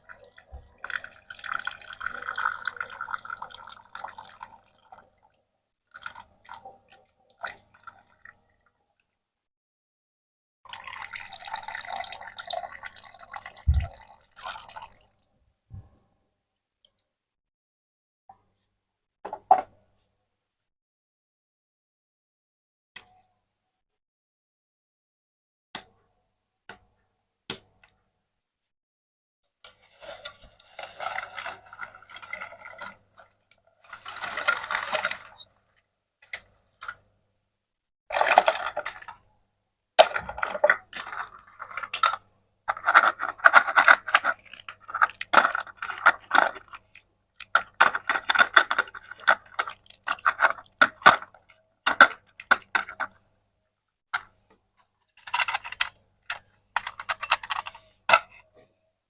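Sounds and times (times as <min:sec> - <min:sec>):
scraping and rustling: 0:29.7 - 0:33.0.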